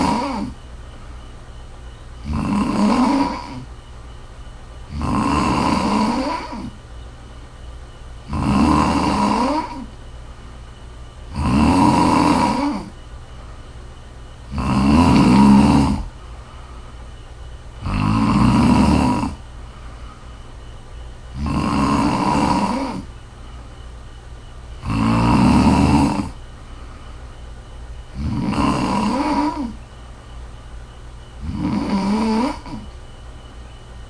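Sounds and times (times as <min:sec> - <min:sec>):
woman snoring: 0:00.0 - 0:00.6, 0:02.2 - 0:03.7, 0:04.9 - 0:06.8, 0:08.2 - 0:10.0, 0:11.3 - 0:13.0, 0:14.5 - 0:16.2, 0:17.8 - 0:19.5, 0:21.3 - 0:23.1, 0:24.8 - 0:26.4, 0:28.1 - 0:29.8, 0:31.4 - 0:33.0
quiet breathing: 0:00.0 - 0:34.0.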